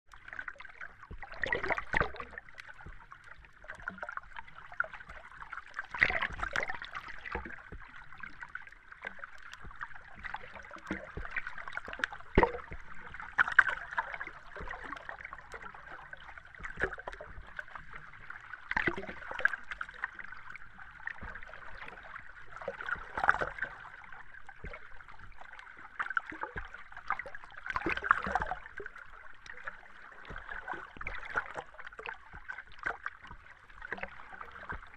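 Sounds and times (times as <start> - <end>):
bubbles bursting underwater: 0.7 - 2.6, 5.7 - 8.5, 9.4 - 17.9.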